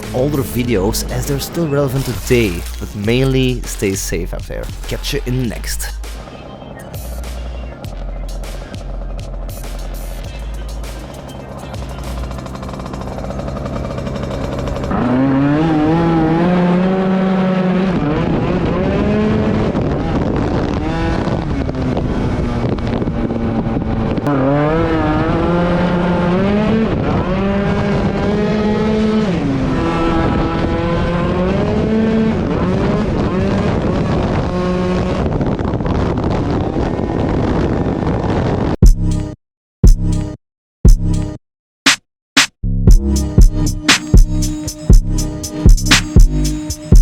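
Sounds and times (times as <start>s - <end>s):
scooter engine revving: 6.0s - 22.6s, 24.2s - 35.0s.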